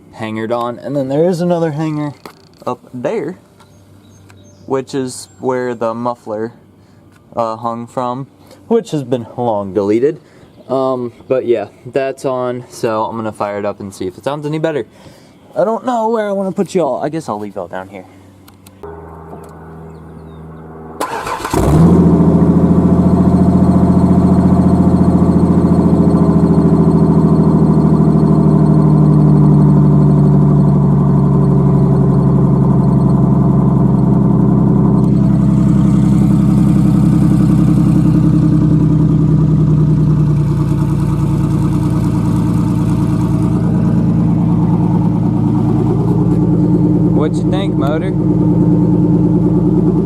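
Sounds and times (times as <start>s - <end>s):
truck engine starting and idling: 18.7s - 50.0s.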